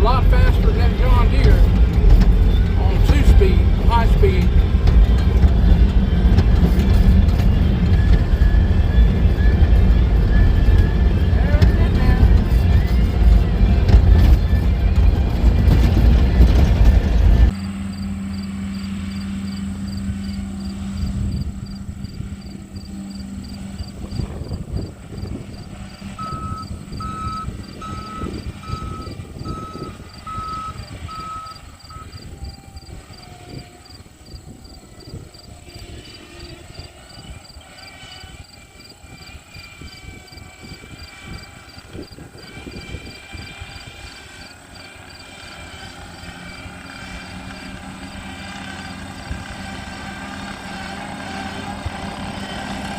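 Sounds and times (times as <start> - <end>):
skid steer engine under load: 0.0 - 52.9
backup alarm beeping: 25.5 - 32.4.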